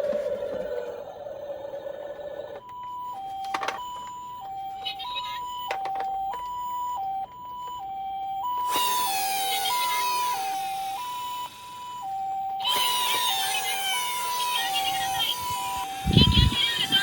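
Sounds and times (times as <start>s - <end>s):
toy cars rolling rattling whir: 0.0s - 2.7s, 12.6s - 15.3s
toy electronic siren: 0.0s - 17.0s.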